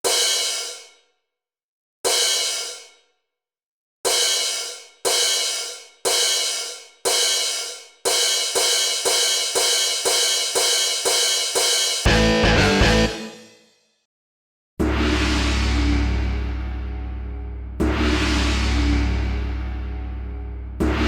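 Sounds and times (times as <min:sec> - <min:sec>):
cymbal crashes: 0:04.1 - 0:13.7, 0:14.8 - 0:21.0.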